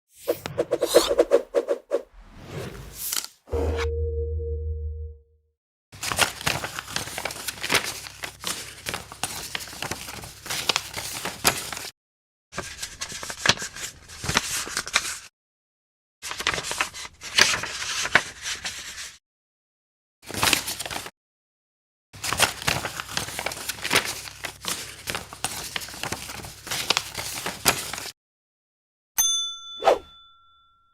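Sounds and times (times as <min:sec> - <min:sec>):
paper crinkling and creasing: 0:06.0 - 0:11.9, 0:12.6 - 0:15.3, 0:16.3 - 0:19.1, 0:20.3 - 0:21.1, 0:22.2 - 0:28.1.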